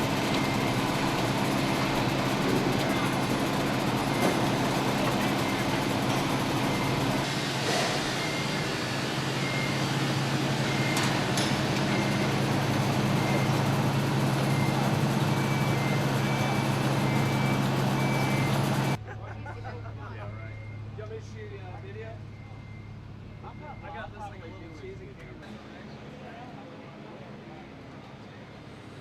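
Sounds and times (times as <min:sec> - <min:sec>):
heavy machine engine running: 0:00.0 - 0:19.0
faint reversing alarm beeps: 0:02.8 - 0:07.2, 0:08.2 - 0:08.7, 0:09.4 - 0:09.8, 0:10.6 - 0:11.2, 0:11.8 - 0:19.0, 0:20.1 - 0:25.4.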